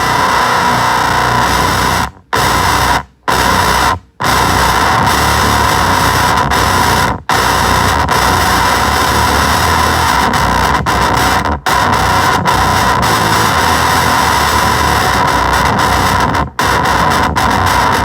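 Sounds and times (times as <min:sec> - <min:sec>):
loud guitar fuzz noise: 0:00.0 - 0:18.0.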